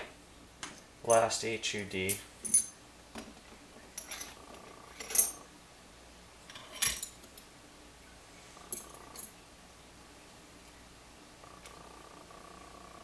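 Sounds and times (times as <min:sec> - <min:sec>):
metal lock picks clinking: 0:05.0 - 0:05.4.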